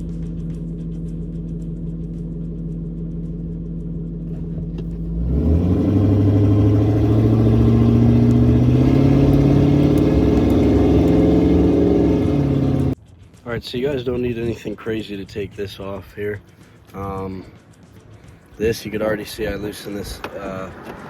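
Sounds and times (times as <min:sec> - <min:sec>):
engine idling roughly: 0:00.0 - 0:05.1.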